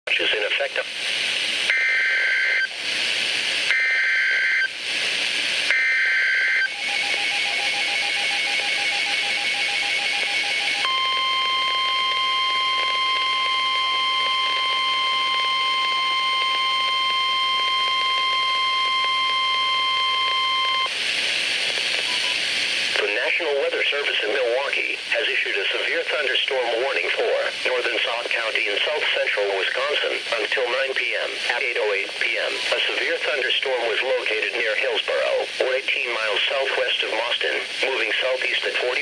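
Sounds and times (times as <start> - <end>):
radio static: 0.1 - 39.0
screeching digital data bursts: 5.8 - 20.9.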